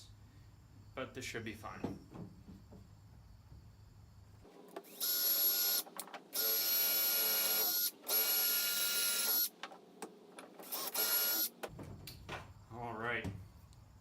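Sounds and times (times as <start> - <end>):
power drill whining: 4.7 - 9.6, 10.6 - 11.6.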